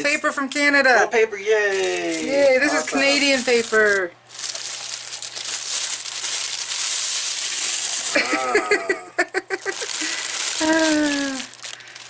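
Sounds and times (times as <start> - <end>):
wrapping paper crinkling: 1.7 - 8.5, 9.2 - 12.0.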